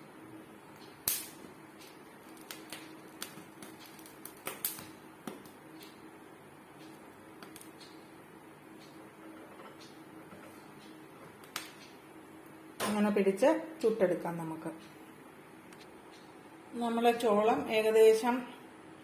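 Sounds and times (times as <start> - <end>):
steady low hum: 0.0 - 19.0
corn kernels crackling and popping: 0.6 - 6.1, 6.8 - 8.1, 11.3 - 12.0.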